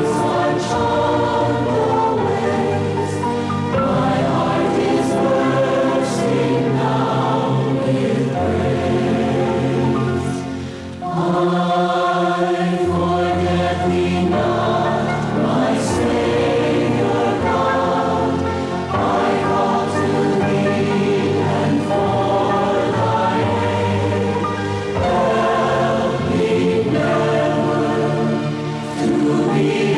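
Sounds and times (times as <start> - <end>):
group singing devotional song: 0.0 - 29.9
sustained chord accompaniment: 0.0 - 29.9.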